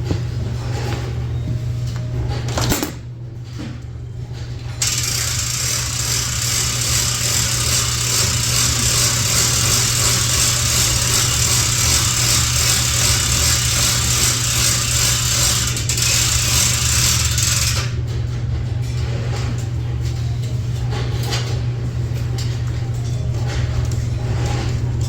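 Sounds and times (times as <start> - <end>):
machine motor hum and hiss: 4.8 - 17.7.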